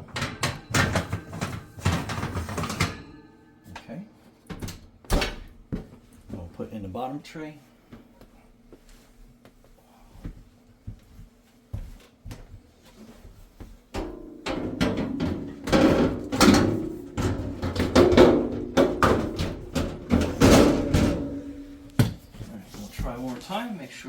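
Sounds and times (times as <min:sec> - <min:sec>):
sheet metal clattering and scraping: 0:00.0 - 0:03.2, 0:14.0 - 0:22.0.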